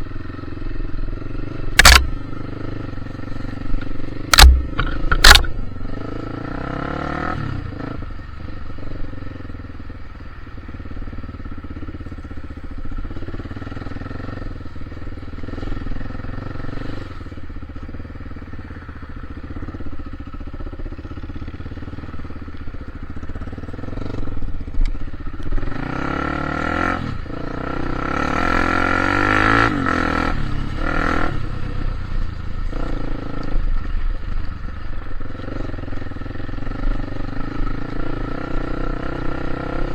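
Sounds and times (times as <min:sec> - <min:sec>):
vehicle engine running: 0:00.0 - 0:07.0, 0:07.7 - 0:26.1, 0:26.7 - 0:39.9.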